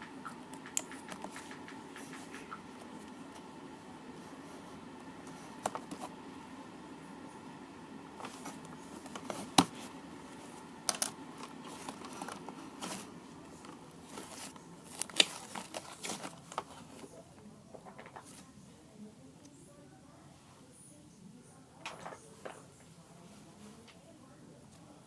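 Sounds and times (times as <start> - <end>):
small objects clicking and tapping: 0.0 - 2.6
light crinkling and rustling: 8.2 - 18.6, 21.8 - 25.0.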